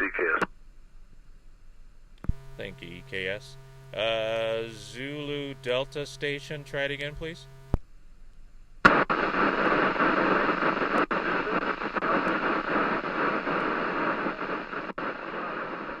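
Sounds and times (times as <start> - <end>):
radio static hiss: 0.0 - 0.5, 2.3 - 7.8, 8.8 - 16.0
radio squelch click: 2.2 - 2.6, 8.8 - 16.0.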